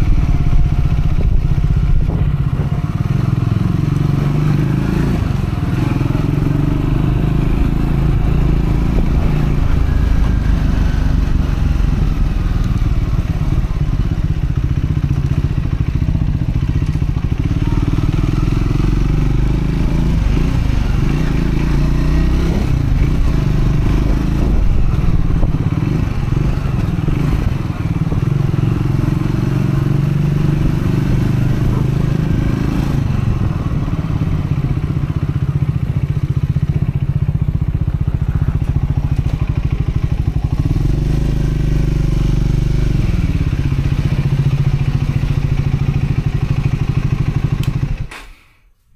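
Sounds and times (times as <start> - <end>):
motorcycle engine running: 0.0 - 48.1.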